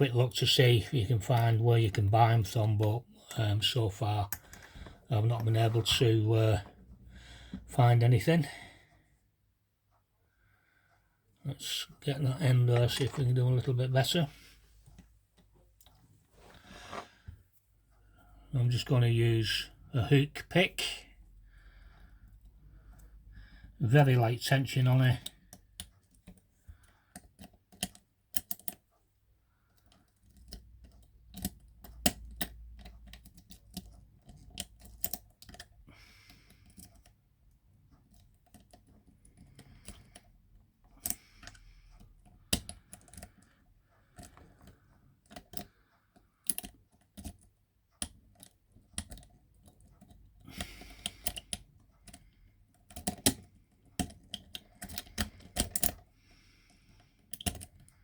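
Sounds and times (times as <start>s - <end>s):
lock pick clicking and scraping: 4.3s - 6.0s, 25.2s - 28.8s, 29.7s - 37.2s, 38.0s - 56.1s, 56.9s - 58.0s.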